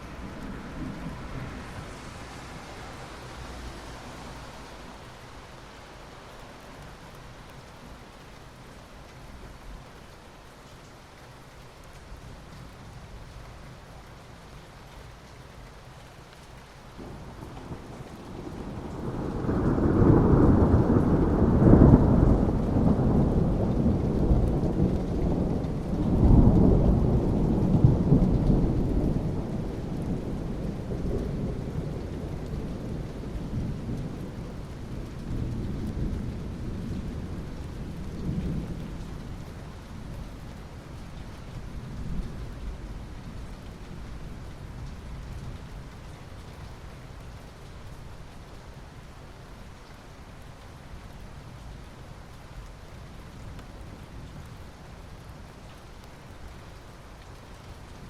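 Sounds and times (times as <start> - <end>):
steady rain: 0.0 - 58.0
rolling thunder: 0.2 - 2.8, 17.0 - 40.1.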